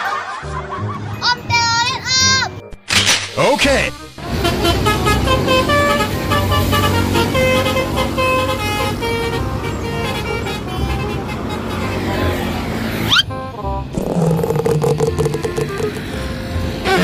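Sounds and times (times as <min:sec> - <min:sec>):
musical air horn tune: 0:03.9 - 0:12.5
bus engine running low: 0:04.2 - 0:17.0.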